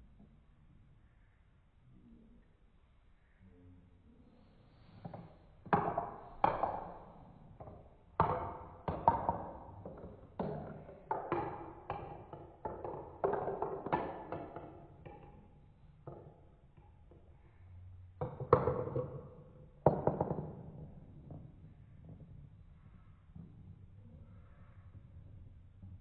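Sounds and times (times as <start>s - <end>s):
marbles clacking on plastic track: 8.2s - 15.5s.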